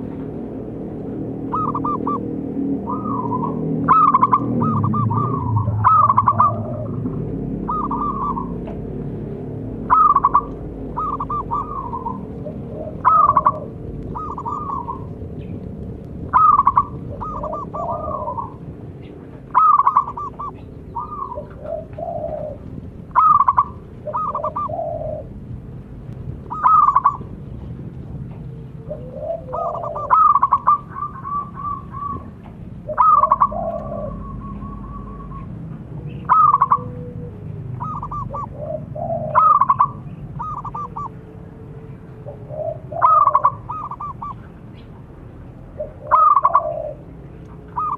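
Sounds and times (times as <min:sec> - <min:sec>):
doves cooing: 0:00.0 - 0:47.9.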